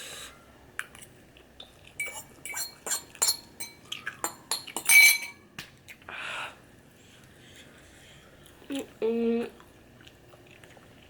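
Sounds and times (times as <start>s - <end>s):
utensil clinking against a bowl: 2.0s - 5.4s.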